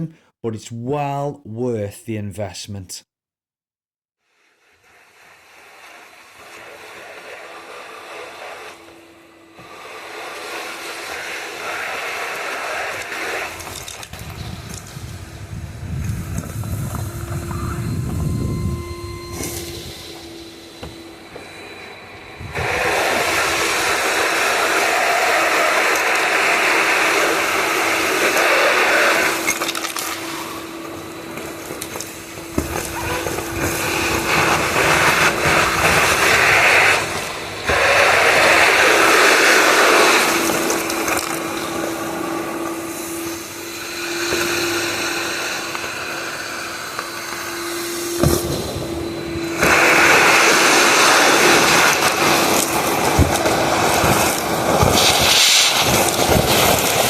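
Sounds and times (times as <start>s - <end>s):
vacuum motor hum: 5.2s - 57.0s
rushing suction noise: 47.6s - 57.0s.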